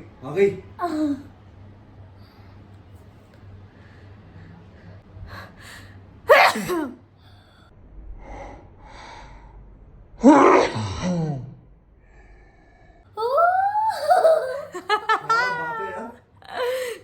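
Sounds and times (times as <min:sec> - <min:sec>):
woman sneezing: 0:06.3 - 0:07.0.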